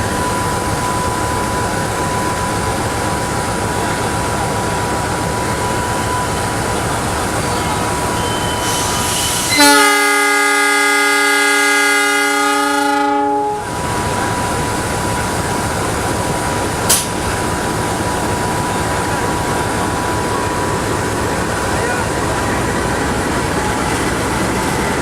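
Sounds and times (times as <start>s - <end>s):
steady train noise: 0.0s - 25.0s
diesel locomotive horn blast: 7.8s - 13.8s.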